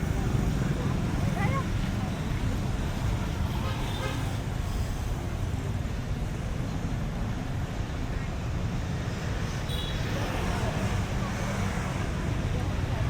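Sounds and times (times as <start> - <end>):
faint voices: 0.0 - 4.4
street traffic rumble: 0.0 - 13.0.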